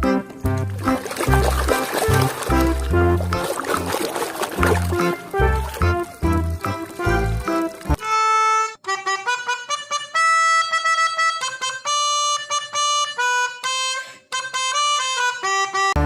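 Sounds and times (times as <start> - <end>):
reedy solo melody: 0.0 - 12.4.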